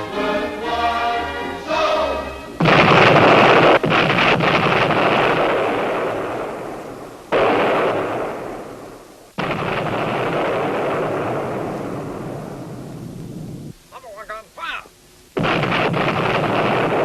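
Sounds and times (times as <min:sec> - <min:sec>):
artillery guns booming: 0:02.6 - 0:13.8, 0:15.4 - 0:17.0.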